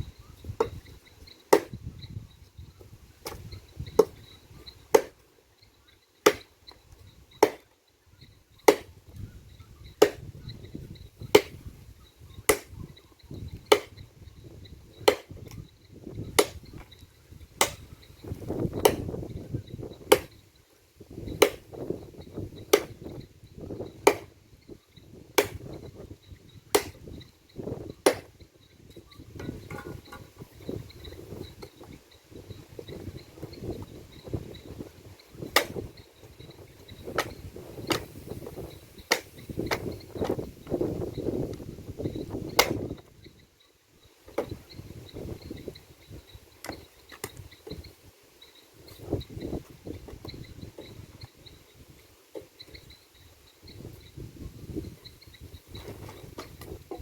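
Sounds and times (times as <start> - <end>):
wood chopping strikes: 1.5 - 1.8, 3.2 - 3.4, 4.0 - 4.2, 4.9 - 5.2, 6.2 - 6.5, 7.4 - 7.8, 8.6 - 9.0, 10.0 - 10.4, 11.3 - 11.7, 12.4 - 12.8, 13.6 - 14.0, 15.0 - 15.6, 16.3 - 16.9, 17.6 - 19.4, 20.0 - 20.4, 21.2 - 21.9, 22.6 - 23.2, 23.8 - 24.4, 25.4 - 26.0, 26.7 - 28.4, 29.4 - 30.6, 35.4 - 36.0, 37.1 - 40.8, 42.5 - 43.1.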